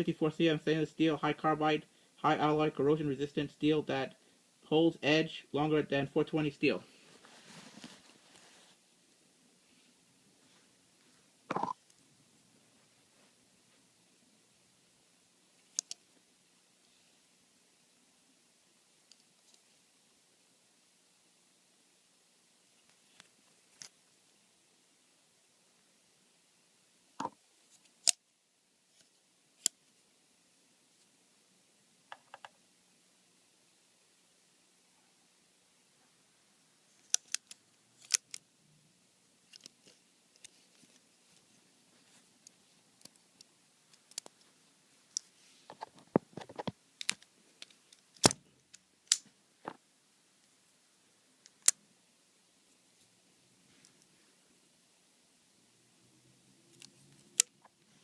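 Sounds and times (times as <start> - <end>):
multitool metal clicks and snaps: 15.7 - 16.0, 37.1 - 38.4, 47.0 - 49.3, 51.4 - 51.8
multitool clicks and snaps: 37.1 - 38.4, 51.4 - 51.8.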